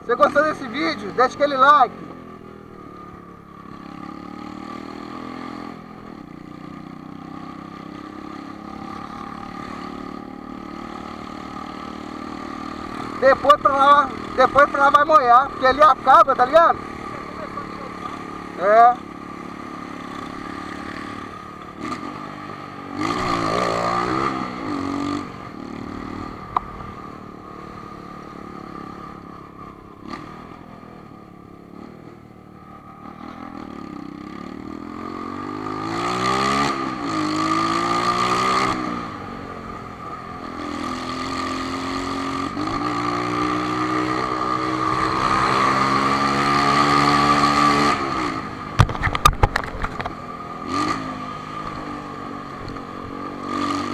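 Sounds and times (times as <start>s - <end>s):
motorcycle engine revving: 0.0s - 53.9s
sharp clatters: 48.8s - 50.2s.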